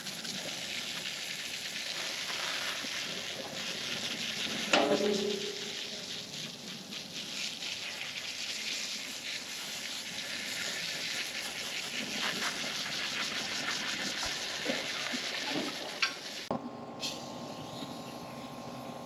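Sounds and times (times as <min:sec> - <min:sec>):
spray hissing against engine: 0:01.9 - 0:14.1.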